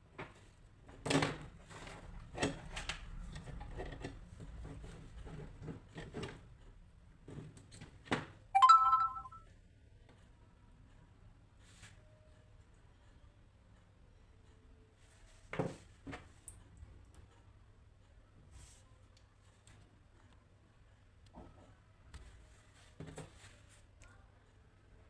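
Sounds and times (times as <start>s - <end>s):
short electronic beep: 8.6s - 9.4s.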